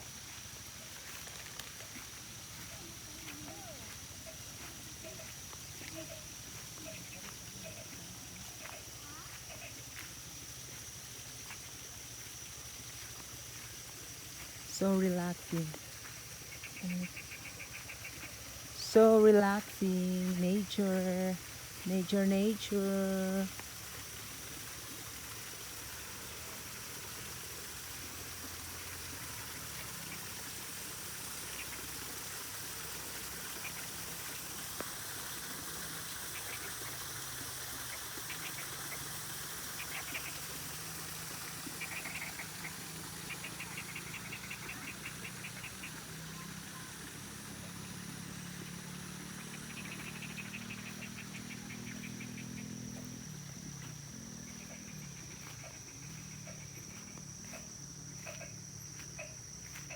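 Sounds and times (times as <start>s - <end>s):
even hiss: 0.0s - 59.9s
high insect drone: 0.0s - 59.9s
rapid clicking animal calls: 37.8s - 40.5s, 41.6s - 46.5s, 49.4s - 52.7s.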